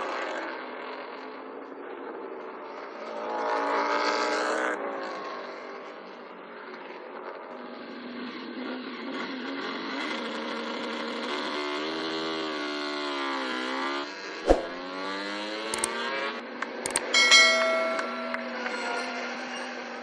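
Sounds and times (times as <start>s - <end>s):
sharp click: 14.5s - 14.8s, 15.7s - 16.0s, 16.9s - 18.8s.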